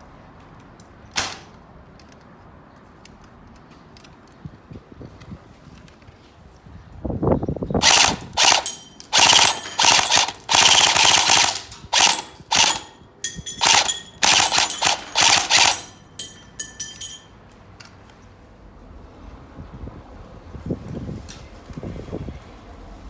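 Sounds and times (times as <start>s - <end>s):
airsoft rifle single shots: 1.1s - 1.5s
airsoft rifle firing bursts: 7.8s - 13.0s, 13.6s - 15.9s.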